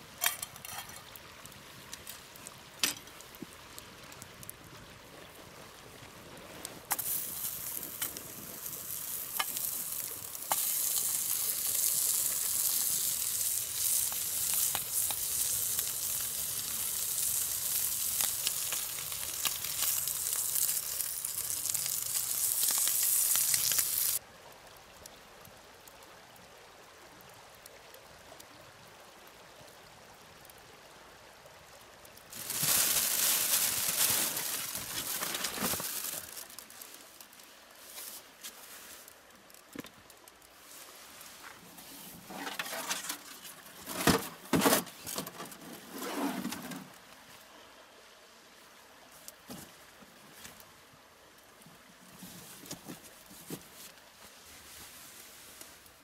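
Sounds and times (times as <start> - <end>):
campfire crackles: 0.0 - 56.0
food sizzling in a pan: 6.9 - 24.2, 32.3 - 36.4.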